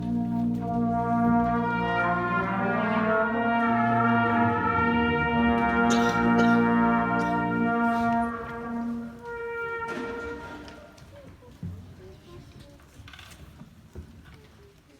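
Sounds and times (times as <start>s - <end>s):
school band playing chords: 0.0s - 11.0s
short noisy strikes: 3.3s - 10.9s.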